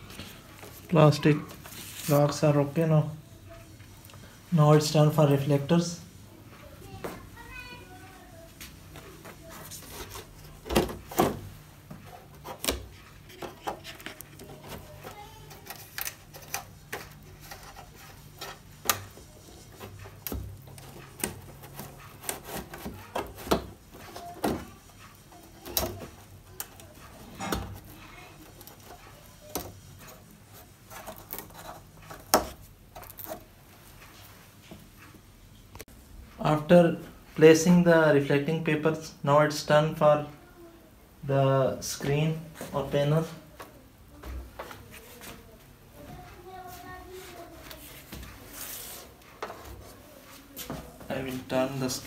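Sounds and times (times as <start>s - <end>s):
plastic sheet rubbing and rustling: 1.6s - 2.4s.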